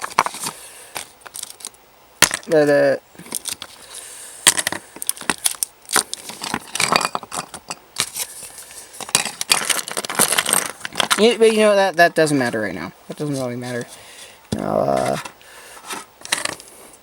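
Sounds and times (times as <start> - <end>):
packaging crinkling and rustling: 0.0 - 1.8, 3.2 - 11.7.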